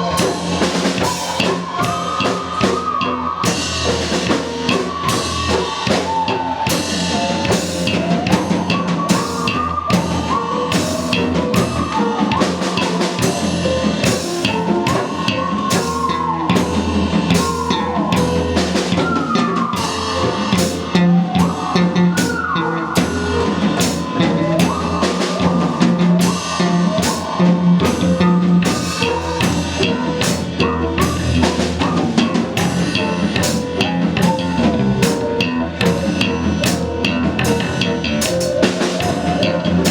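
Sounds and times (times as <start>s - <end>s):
bass line: 0.0s - 39.9s
drum kit beating: 0.0s - 39.9s.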